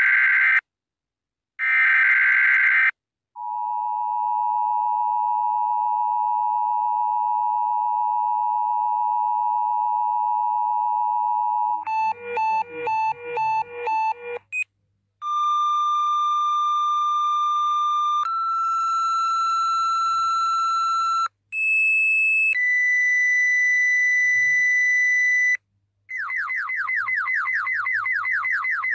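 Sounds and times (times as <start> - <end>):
steady alert tones stepping up: 11.9 - 14.6.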